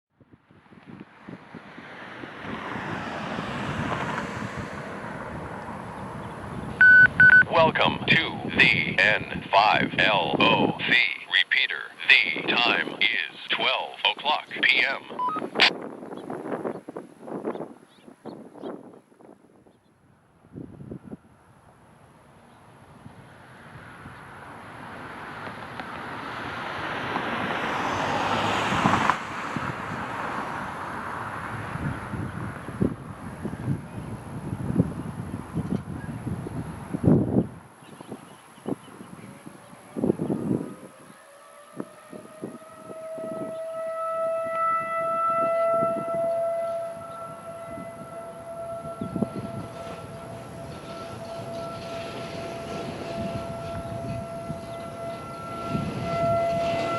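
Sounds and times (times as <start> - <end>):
passing vehicle rushing: 0.5 - 7.4, 22.4 - 37.7, 44.4 - 56.9
warning siren steady tone: 3.6 - 9.2, 38.9 - 56.9.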